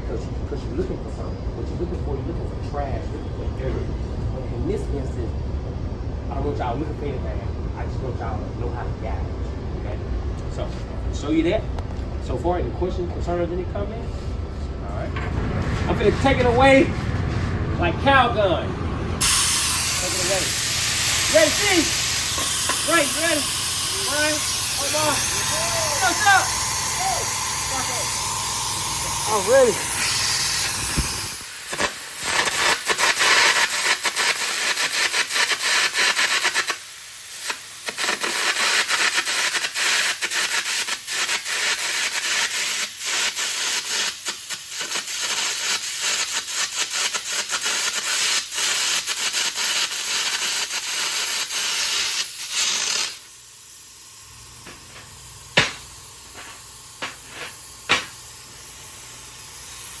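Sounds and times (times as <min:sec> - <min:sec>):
arc crackling and popping: 0:19.2 - 1:00.0
compressed air blast: 0:19.2 - 1:00.0
steady hiss: 0:19.2 - 1:00.0.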